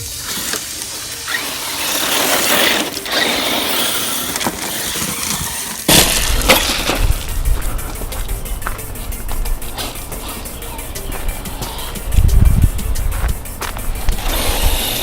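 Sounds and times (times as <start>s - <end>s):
bass beat with fast ticks: 6.2s - 15.0s.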